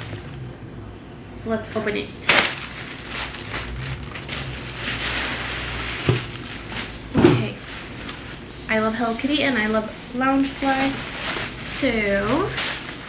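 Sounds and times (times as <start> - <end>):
packaging crinkling: 2.2 - 8.5, 10.4 - 13.0.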